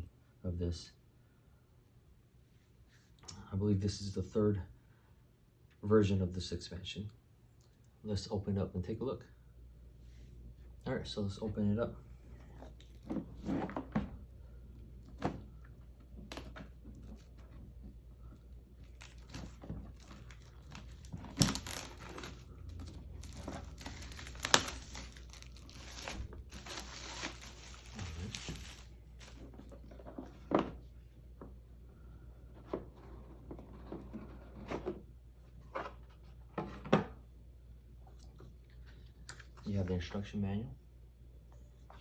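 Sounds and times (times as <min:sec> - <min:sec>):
plastic wrap tearing and crinkling: 0:18.8 - 0:29.4.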